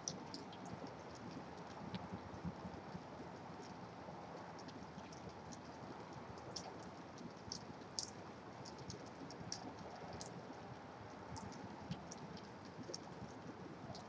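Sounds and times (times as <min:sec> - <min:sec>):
light ticks: 0:04.4 - 0:14.0.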